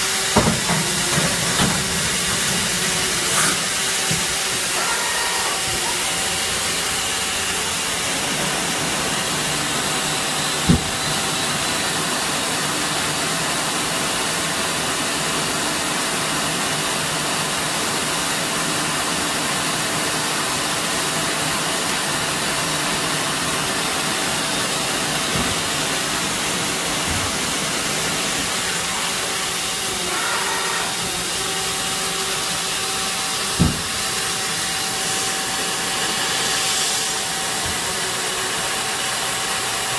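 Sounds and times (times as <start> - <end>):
machine tool hissing and humming: 0.0 - 13.2, 21.4 - 39.9.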